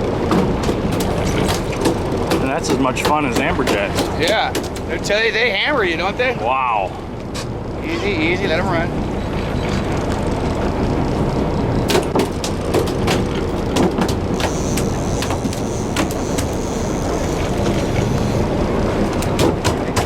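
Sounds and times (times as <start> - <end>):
boat engine idling: 0.0 - 20.0
sharp clicks and knocks: 0.3 - 5.0, 11.9 - 18.4, 19.1 - 20.0.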